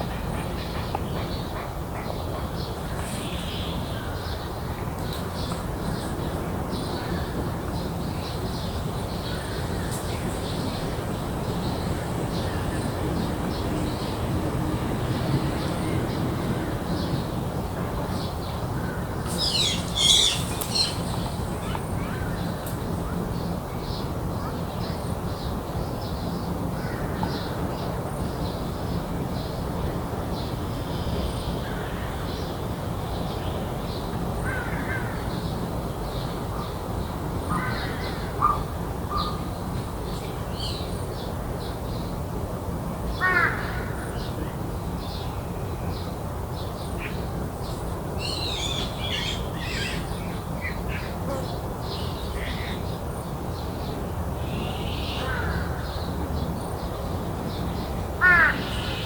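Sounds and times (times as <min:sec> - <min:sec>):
crows cawing: 0:58.2 - 0:59.0.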